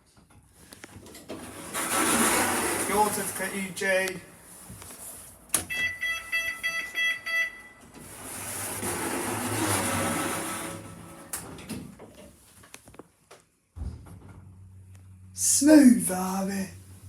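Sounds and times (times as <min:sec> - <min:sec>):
lift electronic beeps: 0:05.7 - 0:07.8.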